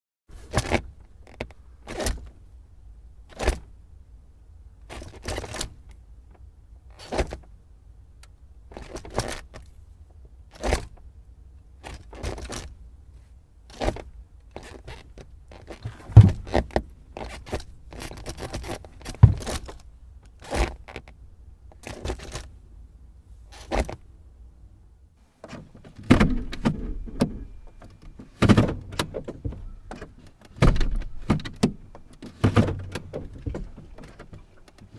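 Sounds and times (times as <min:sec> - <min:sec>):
gear lever clunks and clicks: 0:13.7 - 0:22.5, 0:23.5 - 0:24.0, 0:25.4 - 0:34.9.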